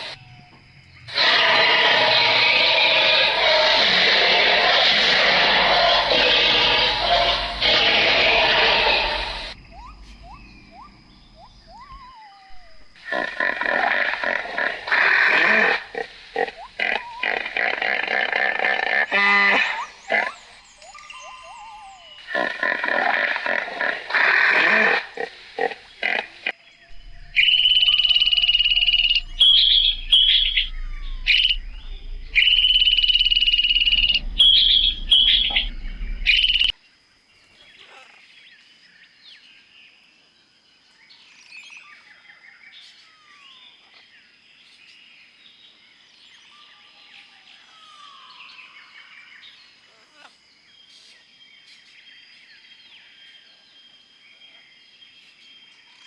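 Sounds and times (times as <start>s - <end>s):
faint bird chirps: 0.0s - 26.2s, 26.8s - 36.8s
shrill animal cries: 0.0s - 26.2s, 26.9s - 36.7s.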